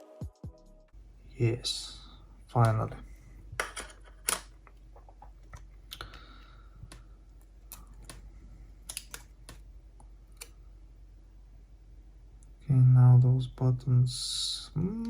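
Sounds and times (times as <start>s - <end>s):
clicks and taps of small parts: 8.8s - 9.6s.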